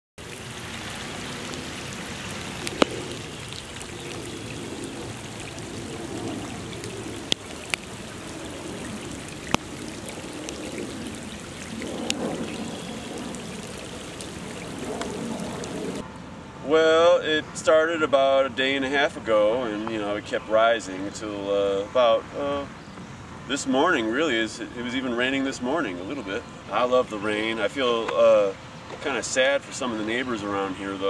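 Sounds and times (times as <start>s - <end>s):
floodwater pouring: 0.2s - 16.0s.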